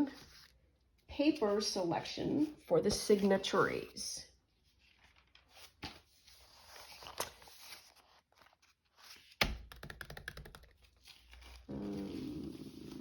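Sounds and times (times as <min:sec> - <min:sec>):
papers rustling: 0:04.6 - 0:13.0.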